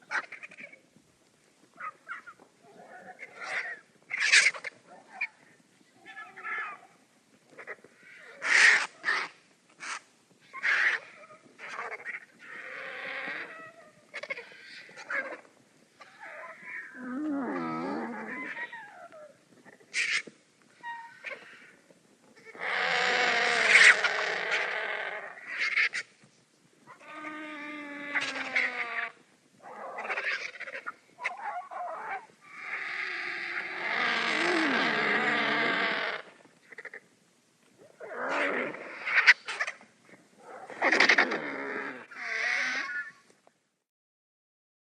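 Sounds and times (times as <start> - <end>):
vultures hissing and rasping: 22.6 - 26.0, 32.0 - 36.3, 38.3 - 39.8, 40.6 - 43.0.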